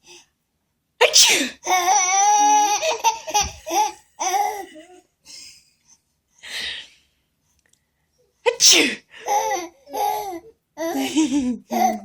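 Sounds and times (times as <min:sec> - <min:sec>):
baby laughing: 0:01.7 - 0:05.0.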